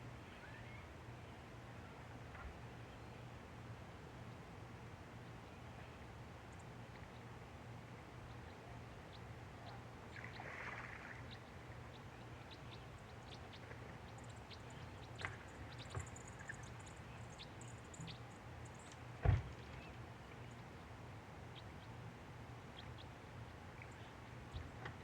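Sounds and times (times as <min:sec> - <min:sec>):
river water: 0:05.6 - 0:25.0
small water splashes: 0:10.1 - 0:11.6
low thump: 0:19.2 - 0:19.6.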